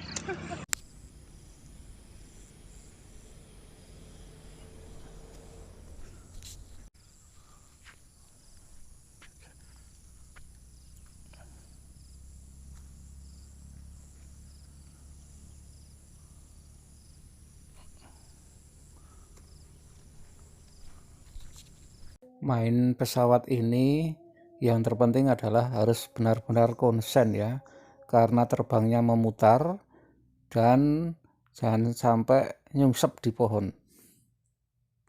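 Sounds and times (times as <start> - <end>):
insects trilling: 0.7 - 5.9, 7.0 - 22.2.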